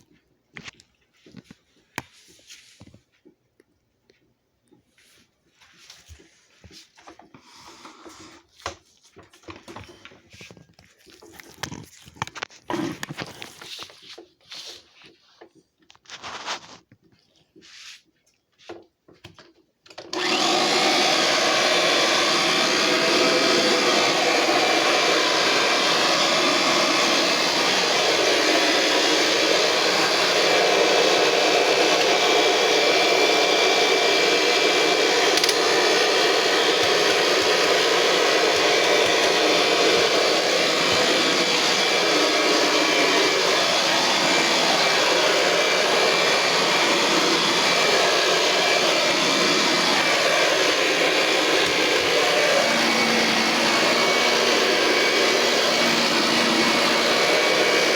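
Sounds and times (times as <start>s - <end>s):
vacuum cleaner motor running: 19.9s - 57.9s.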